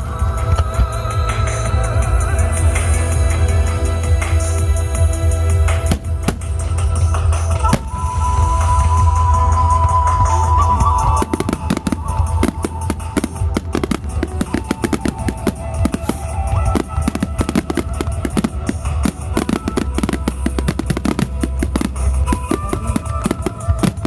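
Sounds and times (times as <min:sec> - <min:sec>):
heavy low hum: 0:00.0 - 0:24.0
music with held tones: 0:00.0 - 0:24.0
fireworks bursting and crackling: 0:05.4 - 0:24.0.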